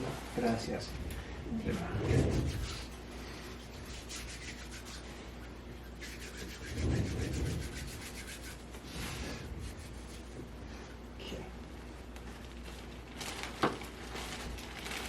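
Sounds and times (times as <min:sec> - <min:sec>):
hands rubbing skin and clothing: 0:01.7 - 0:10.3.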